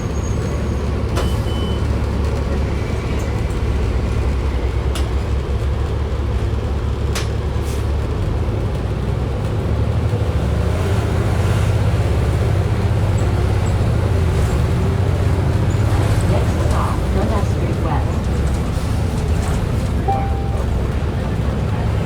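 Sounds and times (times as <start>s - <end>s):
bus engine and road rumble: 0.0s - 22.0s
bus body rattling: 11.2s - 22.0s.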